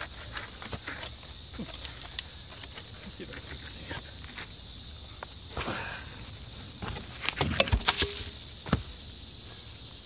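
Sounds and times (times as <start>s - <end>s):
insects chirring: 0.0s - 10.0s
sharp knocks and cracks: 7.2s - 8.9s.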